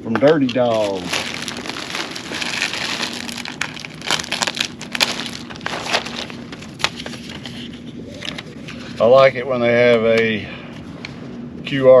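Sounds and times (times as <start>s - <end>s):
faint steady hum: 0.0s - 12.0s
packaging crinkling: 0.4s - 8.5s.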